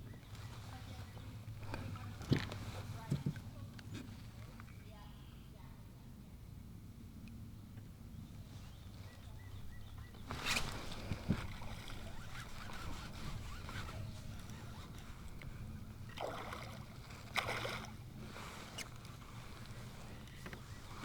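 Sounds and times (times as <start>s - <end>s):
water splashing around kayak: 9.6s - 21.0s.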